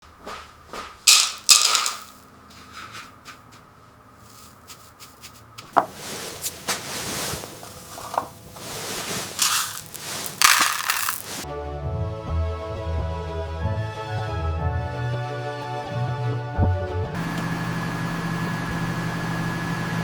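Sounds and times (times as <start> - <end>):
scraping on wood: 1.1 - 11.4.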